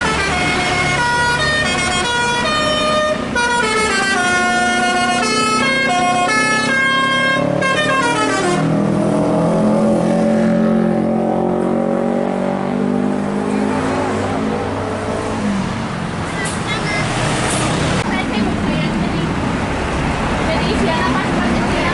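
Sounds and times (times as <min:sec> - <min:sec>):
bus melody horn: 0:00.0 - 0:09.0.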